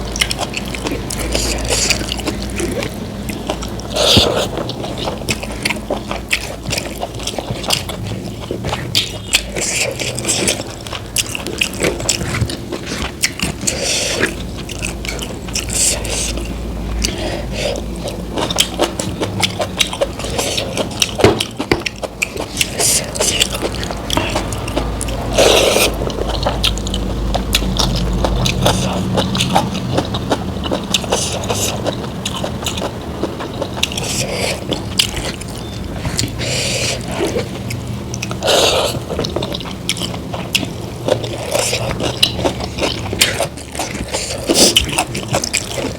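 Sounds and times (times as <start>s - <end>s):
person chewing and crunching food: 0.0s - 45.9s
steady low hum: 0.0s - 45.9s.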